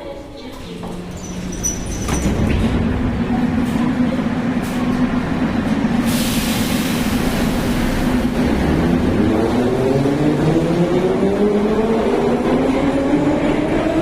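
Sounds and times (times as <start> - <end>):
metro train humming: 0.0 - 14.0
hiss of air: 6.0 - 8.2.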